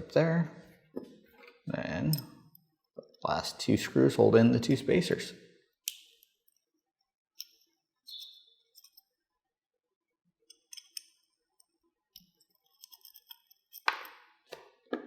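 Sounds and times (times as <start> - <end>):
small metal parts clicking: 10.5 - 14.0.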